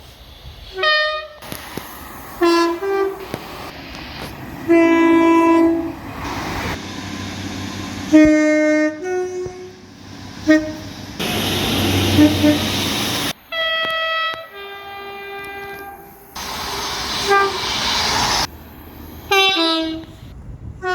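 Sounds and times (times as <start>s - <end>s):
train horn: 0.7s - 1.5s, 2.4s - 3.3s, 4.7s - 6.0s, 8.0s - 18.1s, 19.3s - 20.2s.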